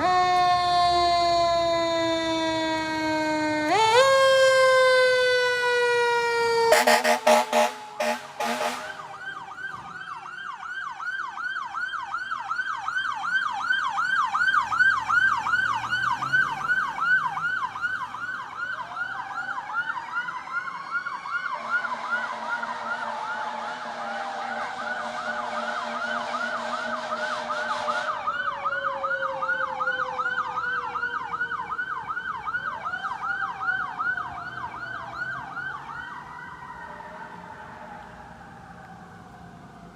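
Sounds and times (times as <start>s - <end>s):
air horns blasting: 0.0s - 9.4s, 21.6s - 28.8s.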